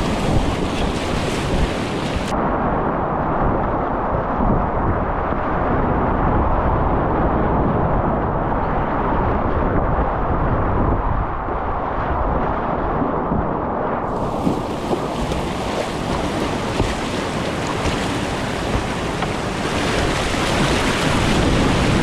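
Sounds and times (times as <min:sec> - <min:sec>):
white water rushing: 0:00.0 - 0:02.3, 0:14.1 - 0:22.0.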